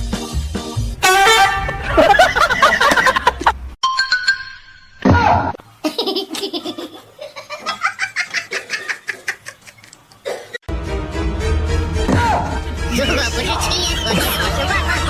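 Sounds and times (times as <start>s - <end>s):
music: 0.0s - 1.7s, 10.7s - 15.0s.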